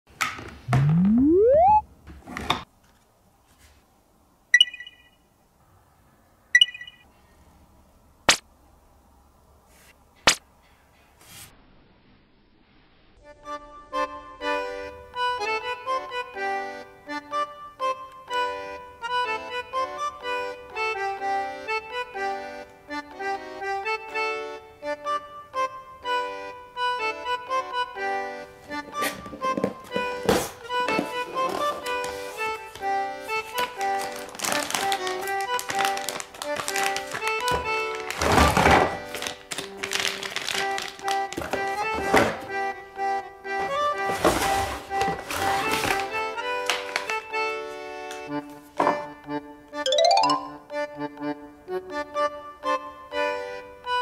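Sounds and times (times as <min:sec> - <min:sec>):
whistle-like rising tone: 0:00.7 - 0:01.8
accordion melody: 0:00.8 - 0:01.8, 0:13.2 - 0:54.0
bright ringing dings: 0:04.6 - 0:05.2, 0:06.6 - 0:07.0, 0:49.9 - 0:50.7.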